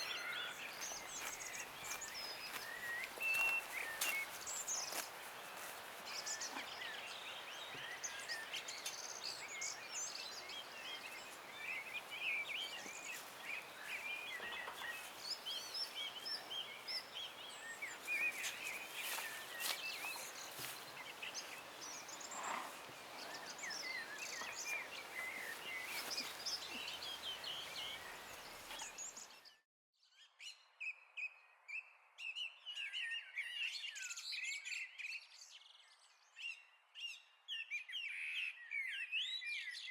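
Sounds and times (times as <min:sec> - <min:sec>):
songbirds chirping and singing: 0:00.0 - 0:29.5.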